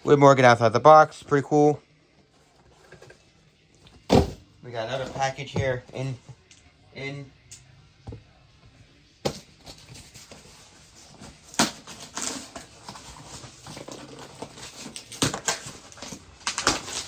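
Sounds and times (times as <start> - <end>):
packaging rustling and scraping: 9.3 - 17.0
packaging clicks and snaps: 13.9 - 17.0.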